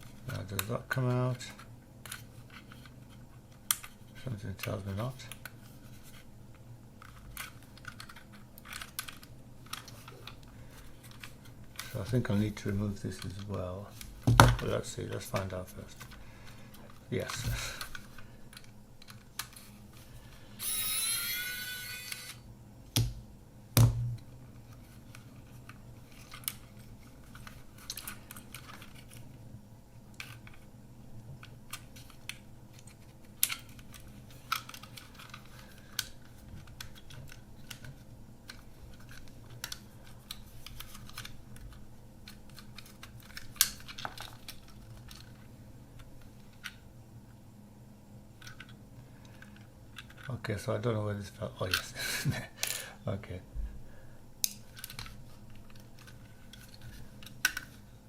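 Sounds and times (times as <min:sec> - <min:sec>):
high squeal rising in pitch: 0:20.6 - 0:22.3
screwdriver clicks and scrapes: 0:20.6 - 0:22.4.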